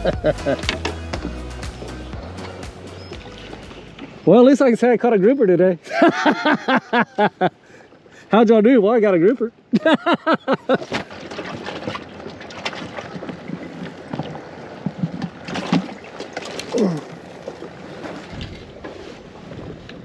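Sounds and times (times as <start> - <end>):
water sloshing against kayak hull: 10.8 - 20.0.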